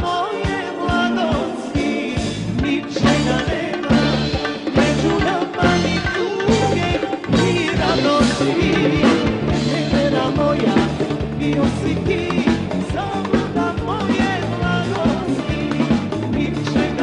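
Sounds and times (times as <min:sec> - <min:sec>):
steady drum beat: 0:00.0 - 0:17.0
ornamented instrumental melody: 0:00.3 - 0:17.0.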